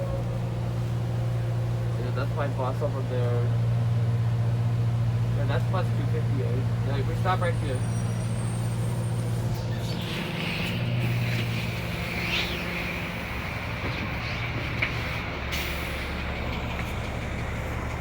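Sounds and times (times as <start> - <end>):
bus diesel engine running: 0.0 - 18.0.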